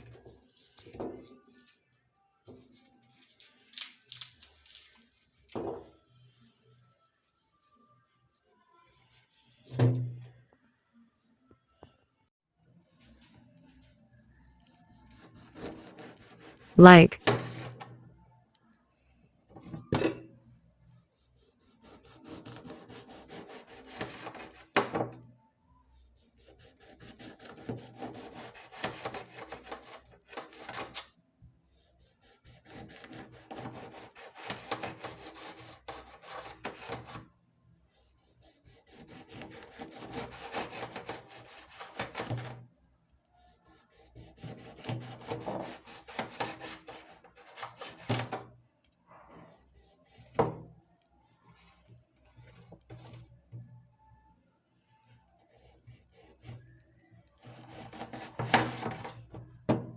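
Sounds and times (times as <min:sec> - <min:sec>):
food scraping on hand grater: 0:32.2 - 0:37.2, 0:38.7 - 0:42.4.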